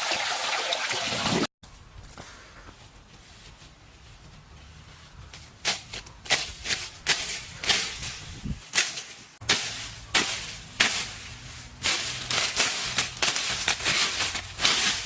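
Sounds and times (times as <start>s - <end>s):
sharp strikes or scrapes: 5.6s - 15.0s.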